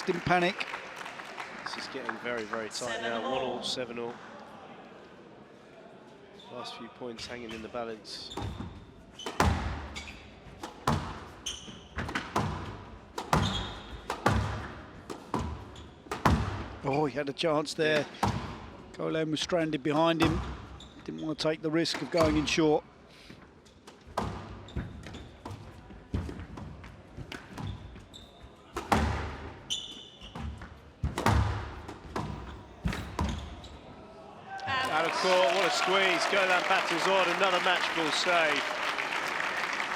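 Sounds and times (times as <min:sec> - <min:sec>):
shoe squeaks: 0:06.4 - 0:12.4, 0:13.2 - 0:14.2, 0:15.3 - 0:17.2, 0:20.2 - 0:21.4, 0:24.6 - 0:25.6, 0:27.5 - 0:29.0, 0:29.6 - 0:30.8, 0:32.8 - 0:34.0
squash ball hits: 0:08.4 - 0:16.9, 0:18.0 - 0:18.7, 0:20.2 - 0:20.7, 0:24.1 - 0:26.6, 0:28.7 - 0:29.7, 0:30.3 - 0:33.6.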